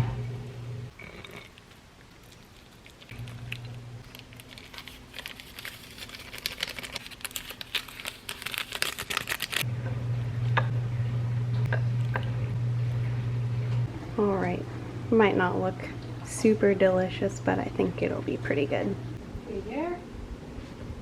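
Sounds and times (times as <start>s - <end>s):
steady low hum: 0.0s - 1.5s, 2.2s - 4.2s, 9.6s - 21.0s.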